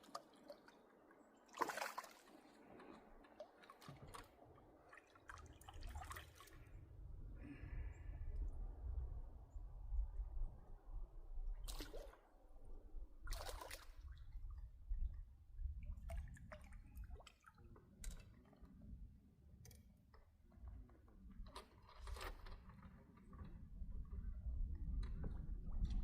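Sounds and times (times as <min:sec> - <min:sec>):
water sloshing and splashing: 0:00.0 - 0:06.8, 0:11.6 - 0:12.4, 0:13.2 - 0:18.9, 0:21.4 - 0:24.2.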